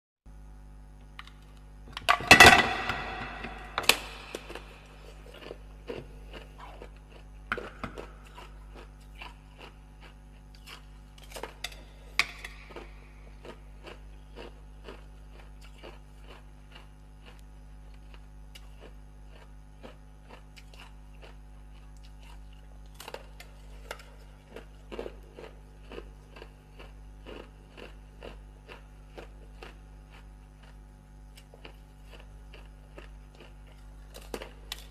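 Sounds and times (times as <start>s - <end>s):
electrical hum: 0.3s - 34.9s
ice being chewed: 3.5s - 34.9s.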